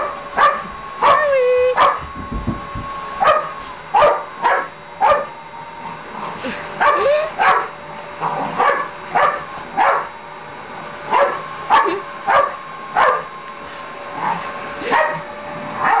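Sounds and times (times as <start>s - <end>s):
dog barking: 0.0s - 2.0s, 3.2s - 5.3s, 6.8s - 7.7s, 8.6s - 10.1s, 11.1s - 13.3s, 14.2s - 15.2s, 15.8s - 16.0s
vacuum cleaner running: 0.0s - 16.0s.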